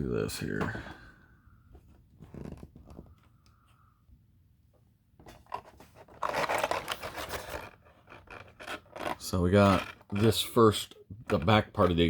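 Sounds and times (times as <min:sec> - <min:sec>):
plastic packaging crinkling and scraping: 0:05.4 - 0:12.0.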